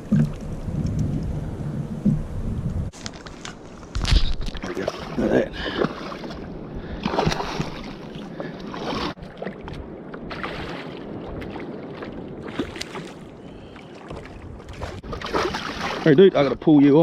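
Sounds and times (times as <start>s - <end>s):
wind on microphone: 0.0s - 3.0s, 9.0s - 16.7s
water slapping kayak hull: 4.2s - 17.0s.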